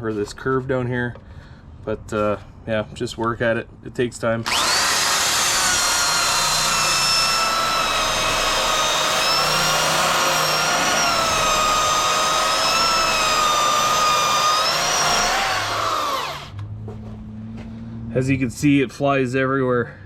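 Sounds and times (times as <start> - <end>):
power tool wire wheel whining: 4.4 - 16.6.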